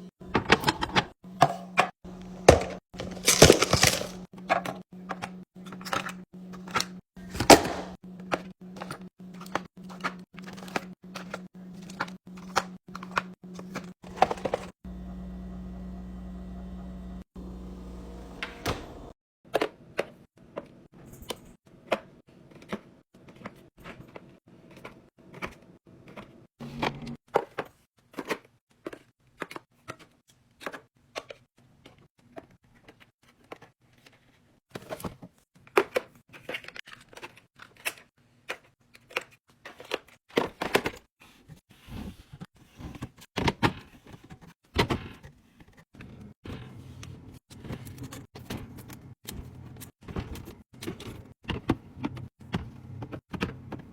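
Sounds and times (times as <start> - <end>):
food packages clicking and knocking: 0.4 - 14.7, 27.2 - 41.1, 47.5 - 53.9.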